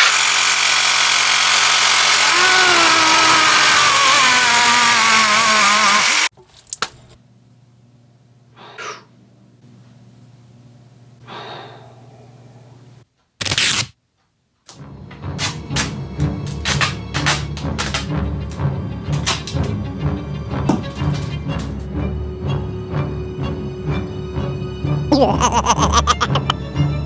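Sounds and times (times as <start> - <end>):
power tool running: 0.0 - 6.3.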